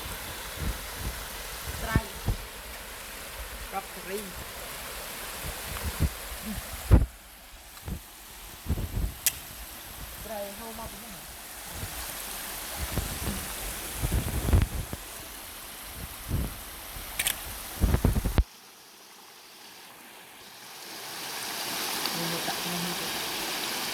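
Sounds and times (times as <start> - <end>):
wind buffeting the microphone: 0.0 - 18.4
river water flowing: 0.0 - 23.9.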